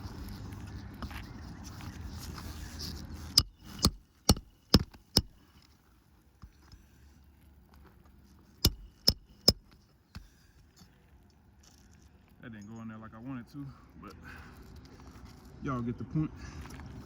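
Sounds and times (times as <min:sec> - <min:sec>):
hammer striking nails: 0:03.4 - 0:05.4, 0:08.6 - 0:09.7.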